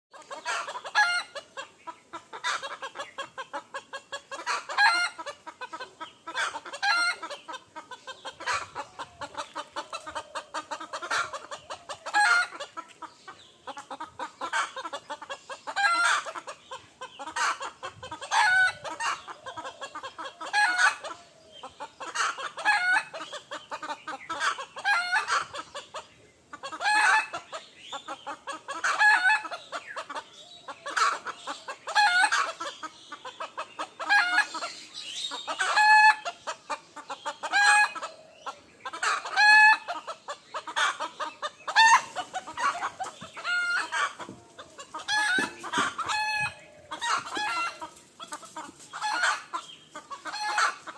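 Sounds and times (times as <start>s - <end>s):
chickens clucking: 0.1s - 50.9s
roosters crowing: 41.7s - 48.0s.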